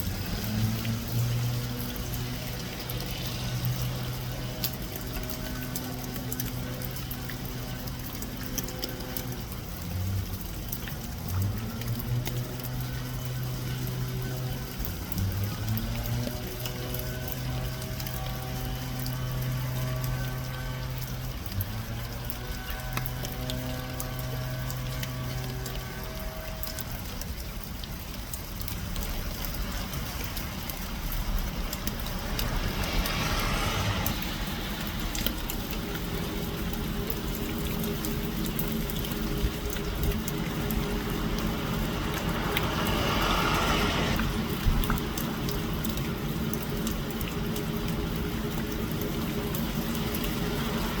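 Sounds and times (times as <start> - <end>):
rain falling on pond water: 0.0 - 51.0.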